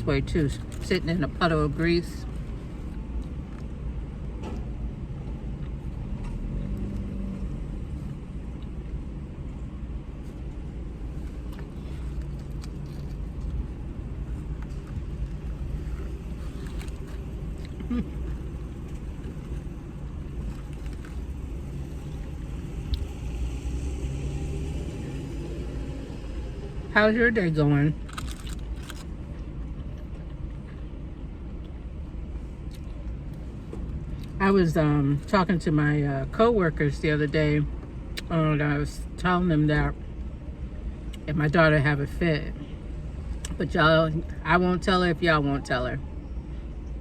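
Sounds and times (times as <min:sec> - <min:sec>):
person eating: 0:11.2 - 0:19.6, 0:20.4 - 0:21.3, 0:28.0 - 0:29.1.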